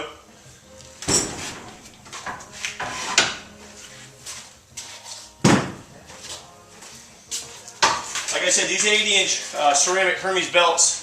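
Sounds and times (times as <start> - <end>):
metal clunks and knocks: 1.0 - 3.5, 5.4 - 5.9.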